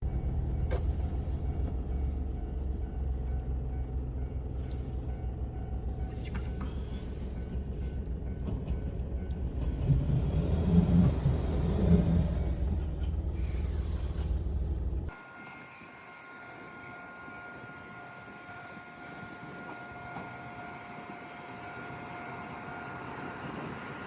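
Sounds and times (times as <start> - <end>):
diesel railcar engine rumbling: 0.0 - 24.0.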